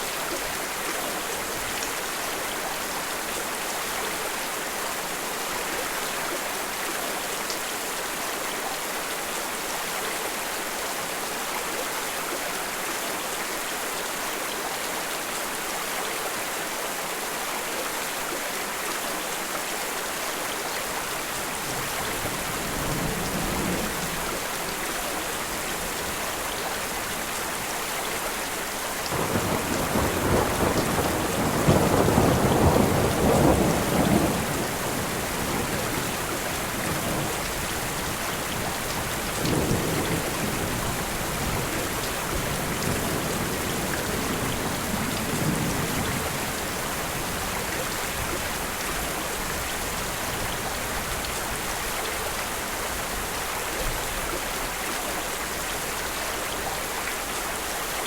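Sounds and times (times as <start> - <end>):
steady rain: 0.0 - 58.0
thunder rumbling: 29.1 - 47.4.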